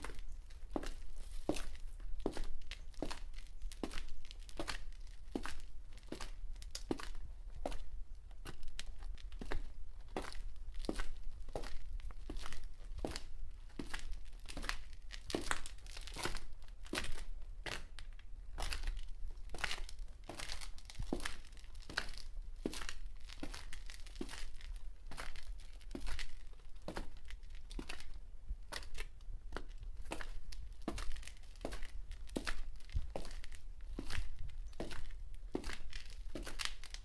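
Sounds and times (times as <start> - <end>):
fast footsteps on concrete: 0.0 - 8.6, 19.6 - 24.6, 29.5 - 37.0.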